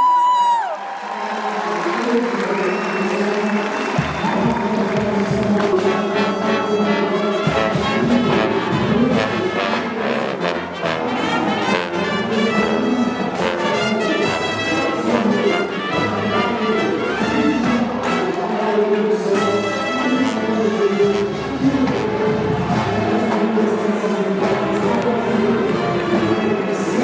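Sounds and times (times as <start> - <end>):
brass melody: 3.4 - 27.0
drum beats: 3.6 - 6.3, 7.4 - 9.6.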